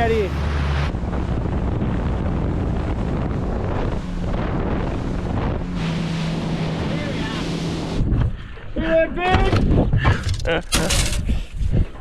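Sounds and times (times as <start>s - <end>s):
boat engine humming: 0.0s - 9.2s
water noise: 0.0s - 12.0s
wind buffeting microphone: 0.0s - 12.0s.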